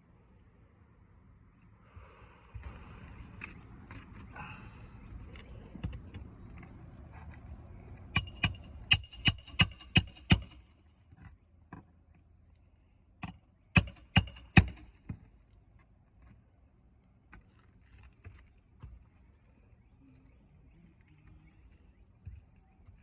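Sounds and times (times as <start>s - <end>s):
nail gun shots into shingles: 13.2s - 14.9s.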